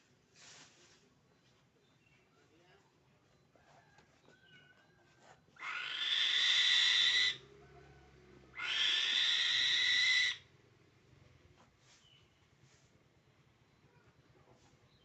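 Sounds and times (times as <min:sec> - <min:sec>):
bird of prey screeching: 0:05.6 - 0:07.4, 0:08.6 - 0:10.4.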